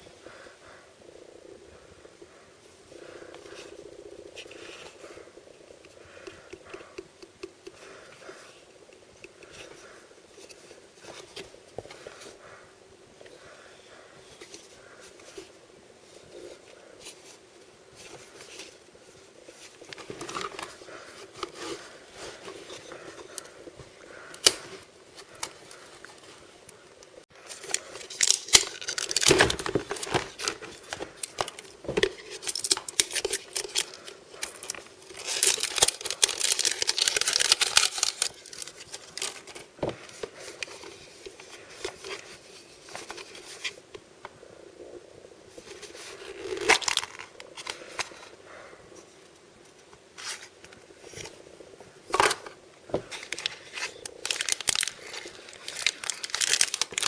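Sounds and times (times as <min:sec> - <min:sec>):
packaging crinkling and tearing: 0:27.4 - 0:42.3, 0:45.7 - 0:48.2, 0:53.1 - 0:57.0.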